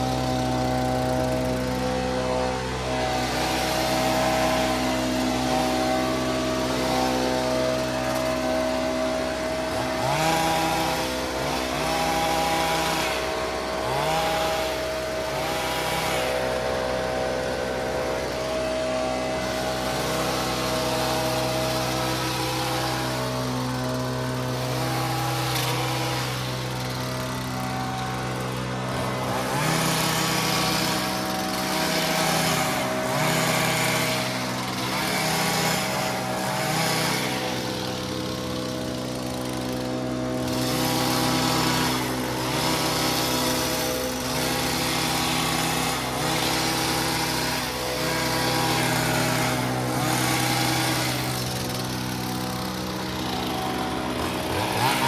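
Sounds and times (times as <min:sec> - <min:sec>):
small gasoline engine running: 0:00.0 - 0:55.0.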